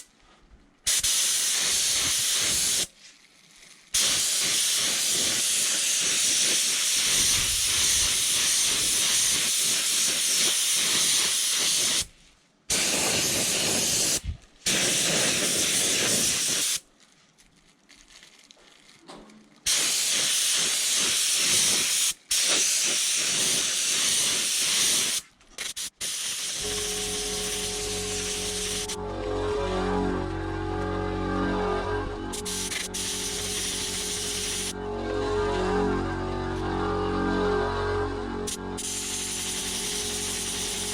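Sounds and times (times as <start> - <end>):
paint spray gun hissing: 0.9 - 2.9, 4.0 - 12.1, 12.7 - 16.8, 19.7 - 29.0, 32.3 - 34.8, 38.5 - 40.9.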